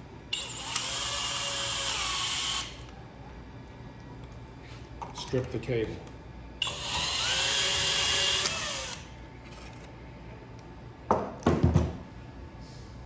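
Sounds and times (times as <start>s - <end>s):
drill whirring: 0.3s - 2.8s, 6.6s - 9.1s.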